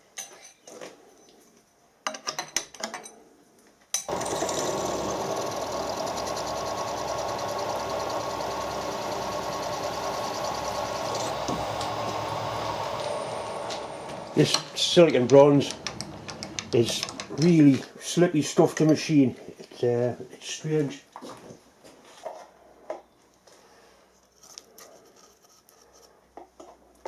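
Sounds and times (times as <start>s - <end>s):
drill cutting cast iron: 4.1s - 17.0s
machine spindle running: 4.1s - 17.3s.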